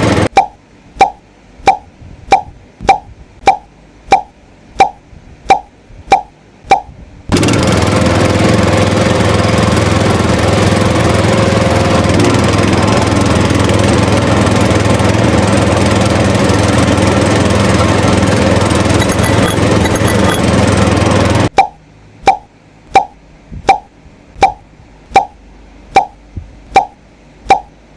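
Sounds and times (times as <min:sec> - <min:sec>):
small motor humming: 0:19.0 - 0:20.5.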